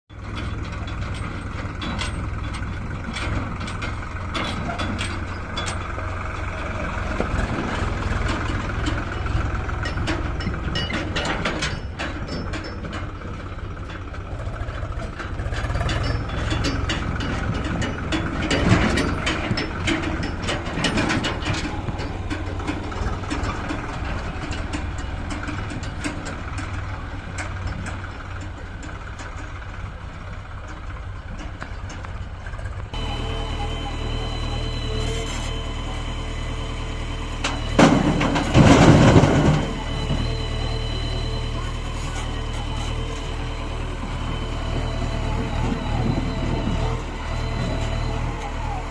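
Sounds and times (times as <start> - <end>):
diesel machinery rumbling: 0.1 - 48.9
stone and metal clacking: 0.2 - 29.7
sharp metal clanks: 15.2 - 28.6.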